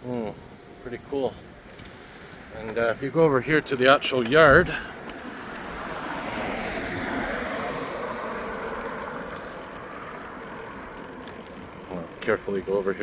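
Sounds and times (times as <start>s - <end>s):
vehicle passing by: 1.9s - 11.9s.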